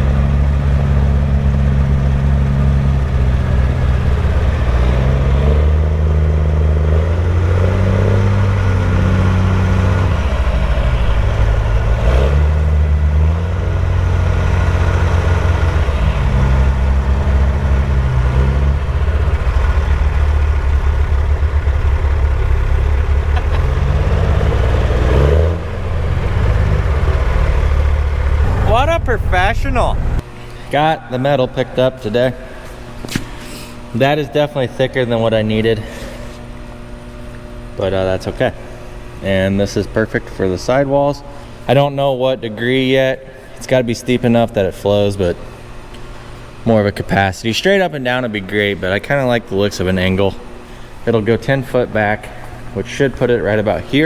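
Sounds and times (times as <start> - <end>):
heavy truck engine revving: 0.0 - 30.4.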